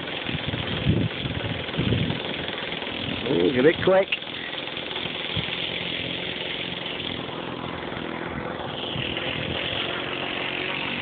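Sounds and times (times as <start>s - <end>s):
model plane engine buzzing: 0.0s - 11.0s.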